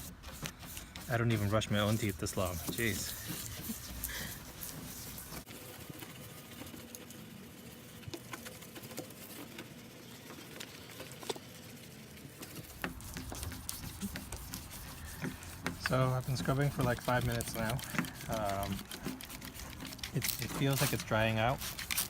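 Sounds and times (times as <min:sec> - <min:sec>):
toothbrush scrubbing headlight lens: 0:00.0 - 0:05.5, 0:12.4 - 0:22.0.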